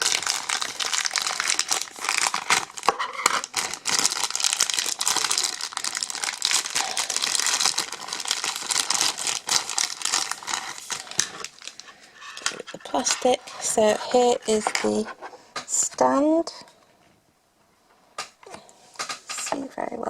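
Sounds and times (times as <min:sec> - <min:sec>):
plastic packaging crinkling: 0:00.0 - 0:15.1.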